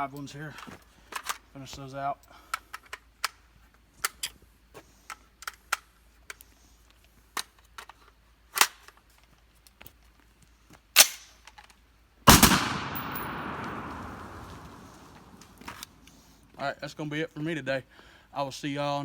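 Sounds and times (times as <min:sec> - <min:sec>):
rifle handling clicks: 0:11.0 - 0:16.2
heavy blast with rumble: 0:12.3 - 0:15.6
rifle shots: 0:12.3 - 0:15.8.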